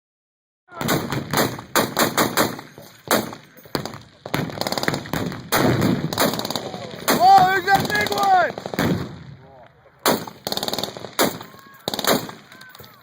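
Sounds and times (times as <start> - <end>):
machine-gun fire: 0.8 - 9.2, 10.0 - 12.6.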